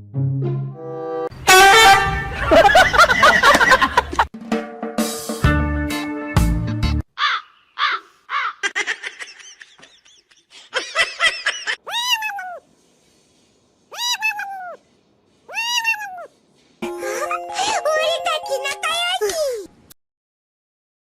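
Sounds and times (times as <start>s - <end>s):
animal calling: 7.2s - 8.8s, 11.8s - 12.6s, 13.9s - 14.8s, 15.5s - 16.4s.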